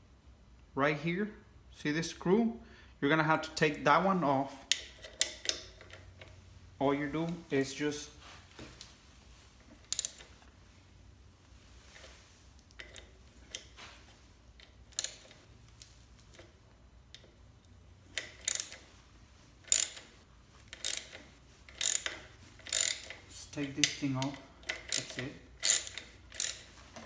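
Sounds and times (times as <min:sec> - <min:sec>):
ratchet wrench clicking: 0:09.9 - 0:10.3, 0:14.9 - 0:15.4, 0:18.1 - 0:18.9, 0:19.6 - 0:26.7.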